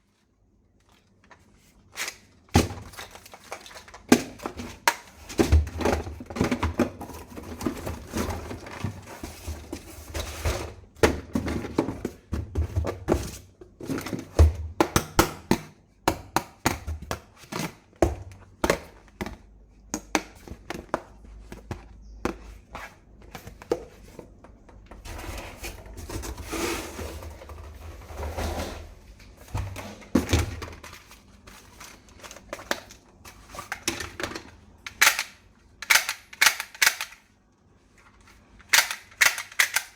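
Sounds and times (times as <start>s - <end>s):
plastic parts clicking and clattering: 0.8s - 15.2s, 29.6s - 37.4s, 38.1s - 39.9s.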